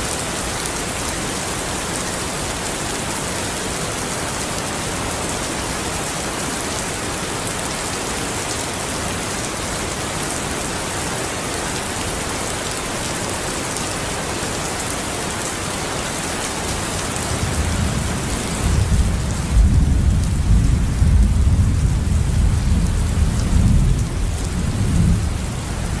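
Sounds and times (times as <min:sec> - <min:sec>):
steady rain hissing: 0:00.0 - 0:26.0
low rumble of thunder: 0:17.3 - 0:26.0.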